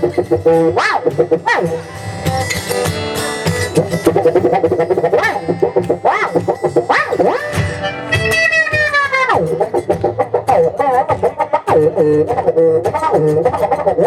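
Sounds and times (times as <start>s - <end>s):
live band playing: 0.0s - 14.0s
plucked guitar rhythm: 0.0s - 14.0s.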